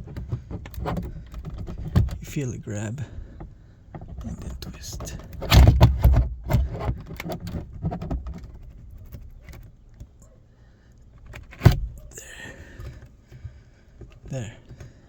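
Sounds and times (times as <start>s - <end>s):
small clicks and rattles: 0.0s - 2.2s, 3.2s - 10.4s.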